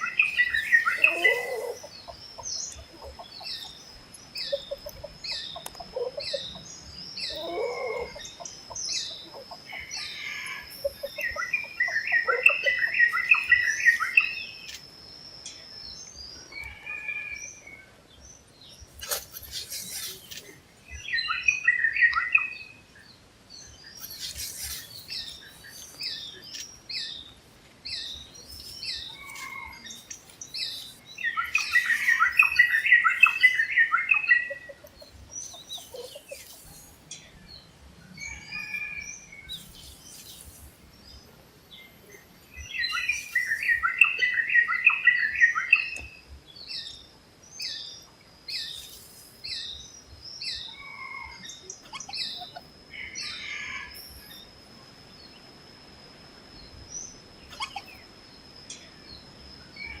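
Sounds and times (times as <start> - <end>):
high bird chirps: 0.0 - 15.7, 18.7 - 22.8, 23.7 - 27.3, 27.9 - 41.2, 41.8 - 52.6
birds singing: 0.0 - 55.6, 56.5 - 60.0.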